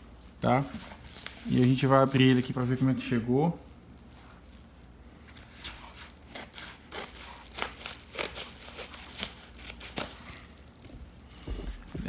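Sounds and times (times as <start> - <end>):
plastic package crinkling: 6.8 - 10.8.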